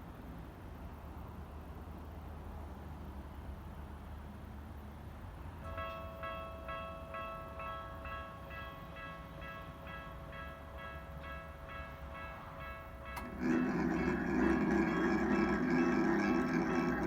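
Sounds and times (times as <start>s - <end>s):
level-crossing warning bell dinging: 5.6s - 17.0s.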